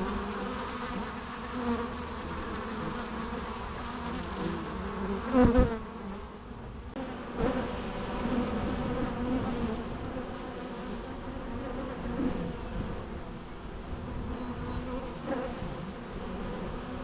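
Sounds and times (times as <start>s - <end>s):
bees buzzing: 0.0s - 12.8s.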